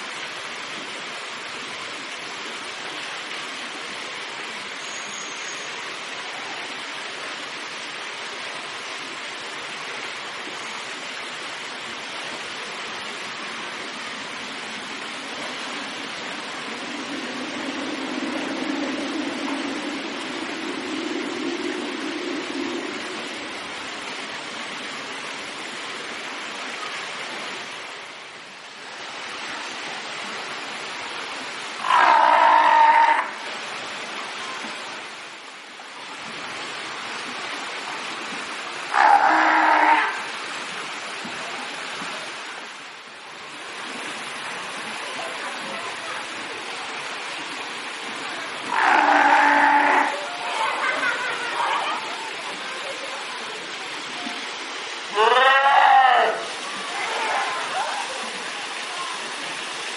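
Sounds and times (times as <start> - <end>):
running water rushing: 0.0 - 59.9
seal calling: 31.8 - 33.4, 38.9 - 40.3, 48.7 - 52.2, 55.1 - 57.9.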